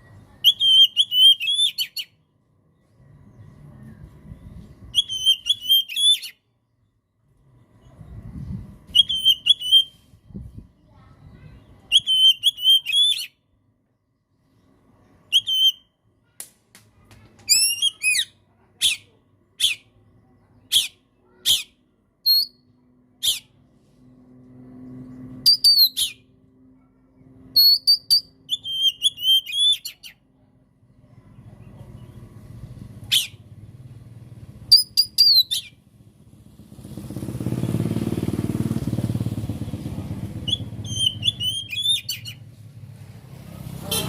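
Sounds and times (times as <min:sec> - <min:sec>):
bird singing trilled phrases: 0:00.0 - 0:02.2, 0:02.8 - 0:06.9, 0:07.6 - 0:13.4, 0:14.6 - 0:16.0, 0:17.4 - 0:23.6, 0:25.4 - 0:26.3, 0:27.1 - 0:30.2, 0:34.7 - 0:35.8, 0:40.4 - 0:42.4
clear bird whistles: 0:00.4 - 0:02.2, 0:04.9 - 0:06.4, 0:08.9 - 0:10.1, 0:11.8 - 0:13.4, 0:15.2 - 0:16.0, 0:17.5 - 0:19.9, 0:20.7 - 0:22.6, 0:25.4 - 0:26.3, 0:27.6 - 0:30.2, 0:33.1 - 0:33.4, 0:34.7 - 0:35.8, 0:40.4 - 0:42.4
sharp loud bird notes: 0:39.5 - 0:42.4.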